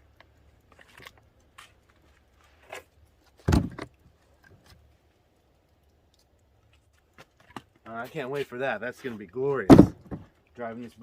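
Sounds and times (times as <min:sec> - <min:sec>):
heavy thump: 0:09.7 - 0:10.3.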